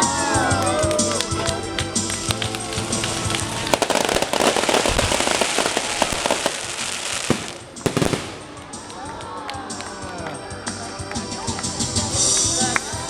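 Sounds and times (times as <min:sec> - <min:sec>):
fireworks crackling pops: 0:00.8 - 0:09.2
loud firework bangs: 0:01.7 - 0:08.9.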